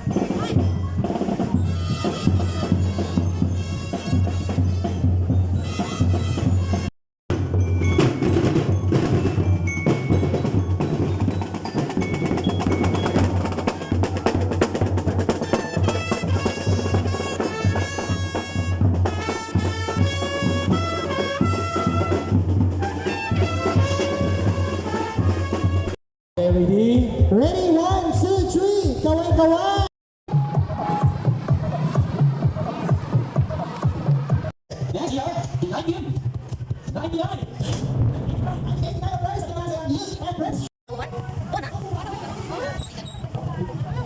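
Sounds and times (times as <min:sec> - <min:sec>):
marching band drumming: 0:00.0 - 0:26.0, 0:30.3 - 0:34.5
melody on pitched instruments: 0:07.3 - 0:13.9, 0:30.3 - 0:34.5.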